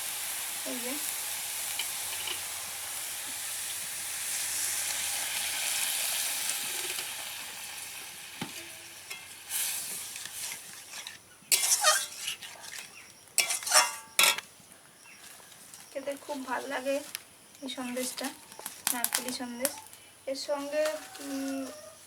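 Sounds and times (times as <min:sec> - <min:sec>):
food sizzling in a pan: 0:00.0 - 0:14.4, 0:17.8 - 0:21.7
utensil scraping a pan: 0:09.1 - 0:14.4.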